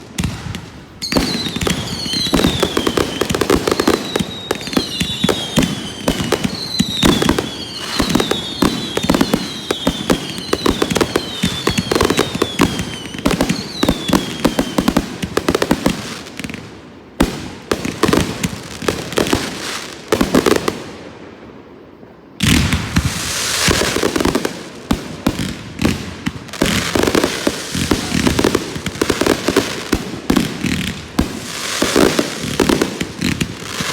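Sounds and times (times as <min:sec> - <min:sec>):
descending firework whistles: 0:00.0 - 0:15.2, 0:22.1 - 0:33.9
fireworks crackling: 0:00.0 - 0:21.0, 0:22.4 - 0:33.9.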